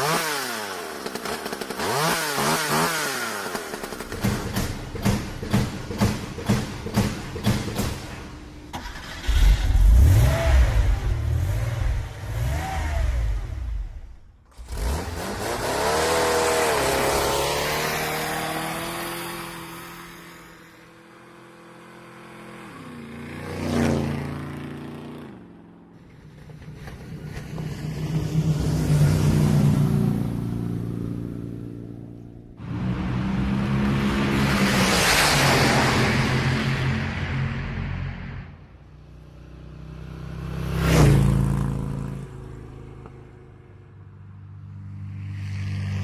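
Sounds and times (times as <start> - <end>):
car engine revving: 8.7 - 20.5
engine rumble: 22.3 - 46.0
car speeding past: 32.6 - 38.6.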